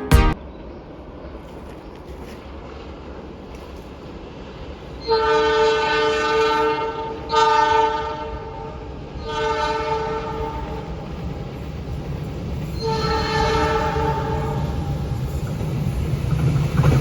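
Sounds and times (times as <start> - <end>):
passing train rumble: 0.0 - 17.0
locomotive air horn chord: 5.1 - 8.6, 9.2 - 10.6, 12.8 - 14.6.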